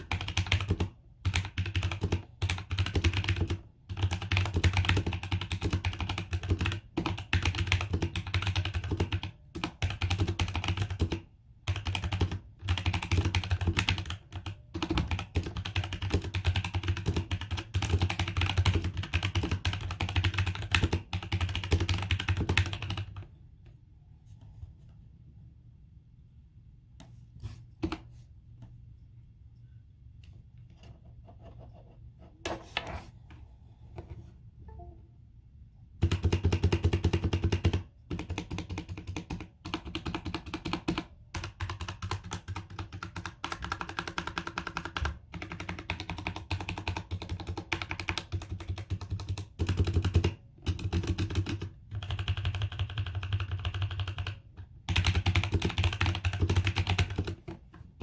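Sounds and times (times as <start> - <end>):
mechanical keyboard typing: 0.0 - 23.3, 36.0 - 57.5.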